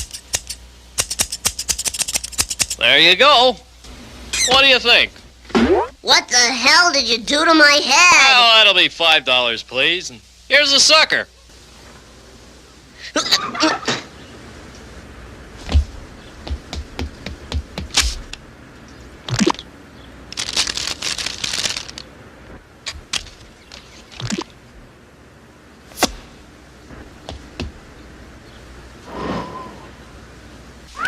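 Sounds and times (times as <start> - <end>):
noisy cartoon burst: 4.3 - 6.5
cartoon clicks and knocks: 19.3 - 19.6, 22.9 - 24.5.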